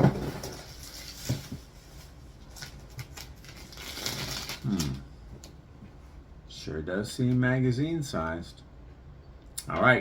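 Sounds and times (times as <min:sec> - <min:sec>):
packaging rustling and crinkling: 0:00.0 - 0:05.5.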